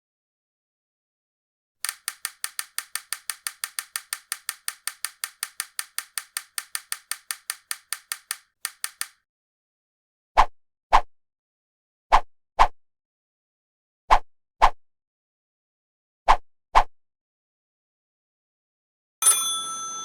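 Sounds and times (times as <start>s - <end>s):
rapid sharp mechanical clicks: 1.8s - 9.2s.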